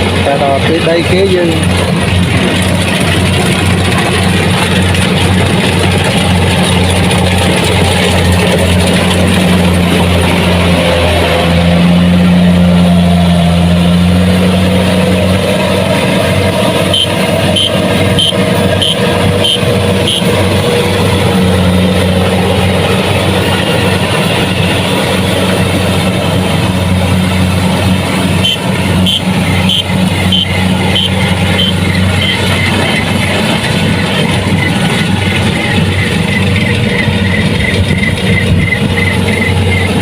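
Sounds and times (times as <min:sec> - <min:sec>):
diesel engine running: 0:00.0 - 0:40.0
high electronic beeps: 0:28.4 - 0:40.0.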